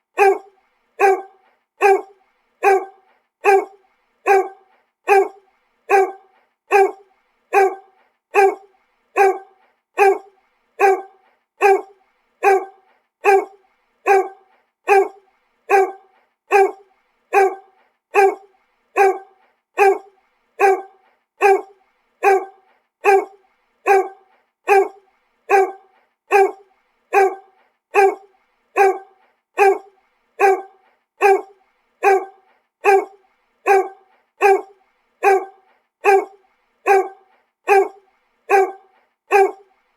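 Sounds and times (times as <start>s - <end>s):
dog barking: 0.2s - 39.7s.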